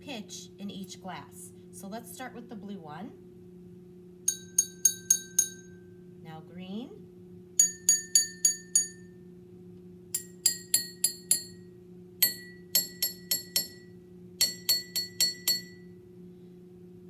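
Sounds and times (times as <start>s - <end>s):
glasses tapped ringing notes: 4.3s - 5.8s, 7.6s - 9.1s, 10.2s - 11.6s, 12.2s - 13.8s, 14.4s - 15.8s.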